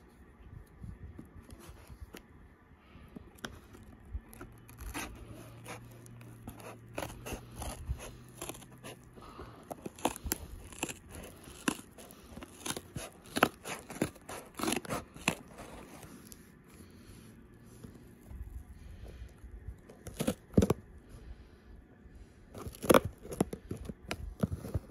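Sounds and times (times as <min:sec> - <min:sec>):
faint low hum: 0:00.0 - 0:24.9
packaging crackling and clicking: 0:03.3 - 0:16.4, 0:22.6 - 0:24.9.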